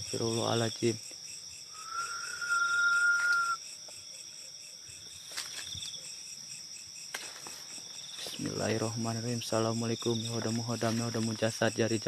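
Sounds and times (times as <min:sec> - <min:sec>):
crickets trilling: 0:00.0 - 0:12.0
long whistle-like tone: 0:01.7 - 0:03.6.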